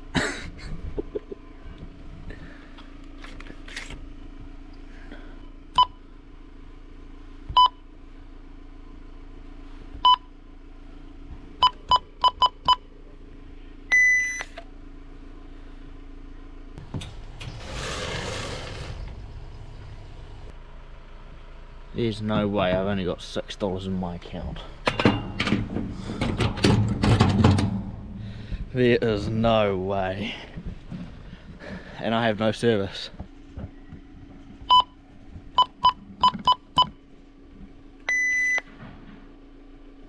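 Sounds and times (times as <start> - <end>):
steady low hum: 0.0 - 40.0
keypad beeps: 34.7 - 34.9, 38.1 - 38.6
long high beep: 38.1 - 38.6.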